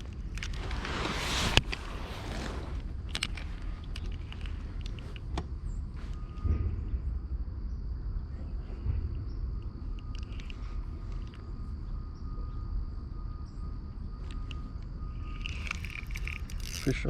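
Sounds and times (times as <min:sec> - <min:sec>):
small clicks: 0:00.0 - 0:06.5, 0:09.5 - 0:11.8, 0:14.2 - 0:17.0
crickets chirring: 0:00.0 - 0:17.0
low rumble: 0:00.0 - 0:17.0.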